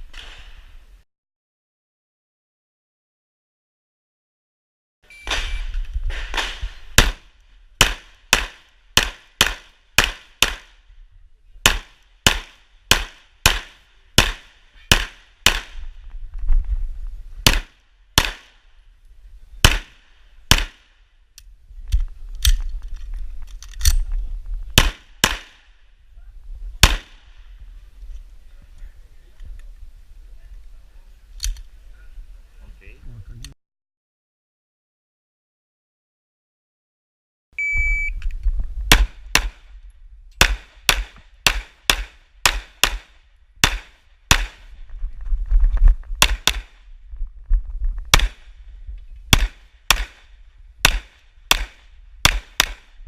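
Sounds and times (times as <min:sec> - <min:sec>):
short electronic beep: 0:05.1 - 0:05.7, 0:37.6 - 0:38.2
pistol shots: 0:06.3 - 0:07.2, 0:07.8 - 0:10.8, 0:11.6 - 0:15.8, 0:17.4 - 0:18.6, 0:19.6 - 0:20.9, 0:24.8 - 0:25.6, 0:26.8 - 0:27.2, 0:38.9 - 0:39.6, 0:40.4 - 0:44.7, 0:46.2 - 0:46.8, 0:48.1 - 0:48.5, 0:49.3 - 0:53.0
low rumble: 0:38.1 - 0:40.4.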